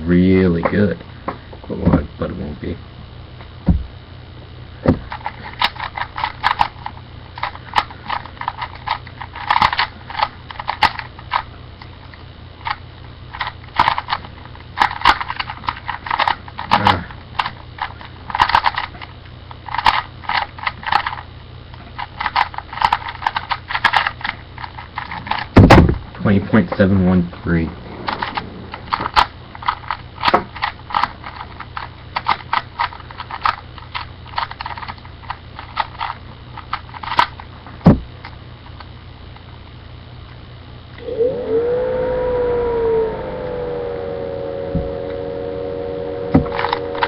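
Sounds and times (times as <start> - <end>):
puzzle cube layers clicking: 5.1 - 11.5, 12.6 - 19.0, 19.6 - 21.2, 21.9 - 25.6, 28.0 - 37.4.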